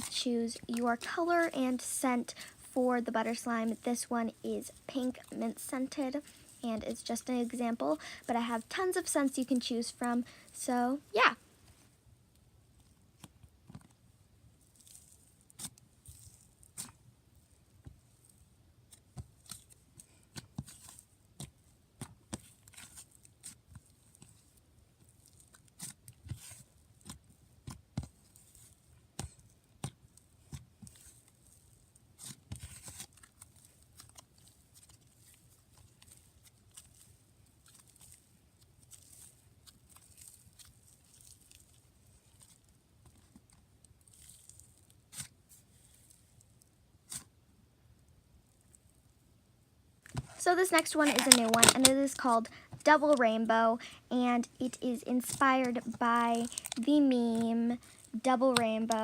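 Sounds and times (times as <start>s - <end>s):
hands squishing sticky slime: 14.6s - 17.0s, 18.9s - 46.2s, 50.2s - 59.0s.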